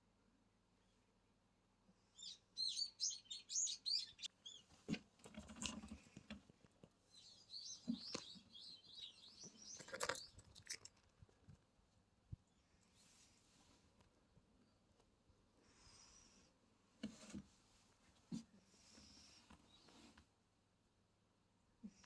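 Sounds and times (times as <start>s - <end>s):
small bird chirping: 2.0s - 4.8s, 7.0s - 10.9s.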